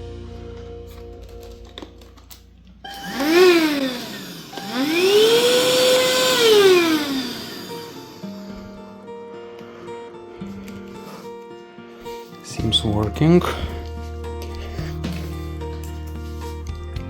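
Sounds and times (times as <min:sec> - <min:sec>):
vacuum motor whining: 0:00.9 - 0:09.7.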